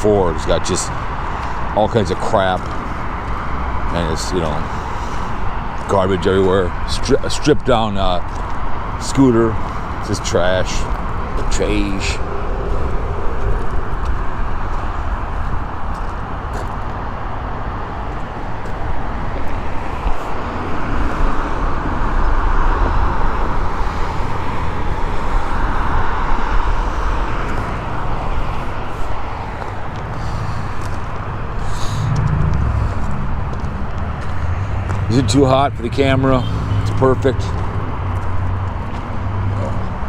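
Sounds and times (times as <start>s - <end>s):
freeway traffic: 0.0s - 40.0s
low rumble: 11.1s - 16.0s, 20.0s - 39.4s.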